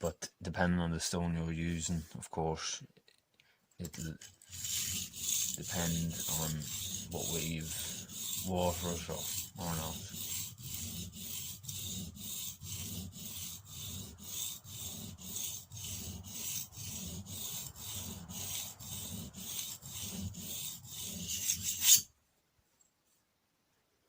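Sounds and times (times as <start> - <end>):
blade scraping on sharpening stone: 3.9 - 22.1.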